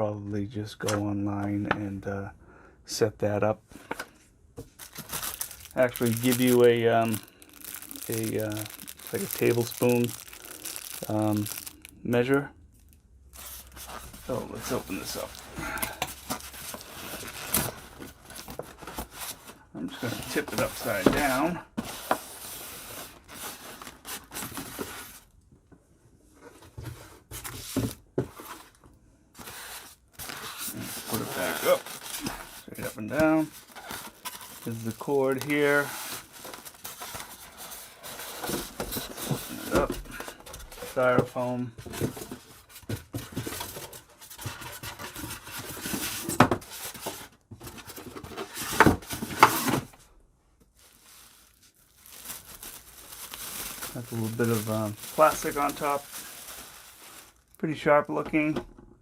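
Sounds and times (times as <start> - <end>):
cardboard scraping and rustling: 4.7 - 11.6, 13.4 - 25.2, 26.4 - 28.8, 29.4 - 50.0, 50.8 - 57.4
styrofoam rubbing and scraping: 29.4 - 39.8.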